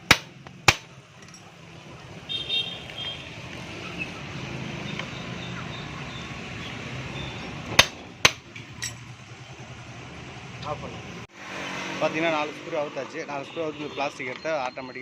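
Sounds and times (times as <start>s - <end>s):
metal clinks of hand tools: 1.2s - 1.5s.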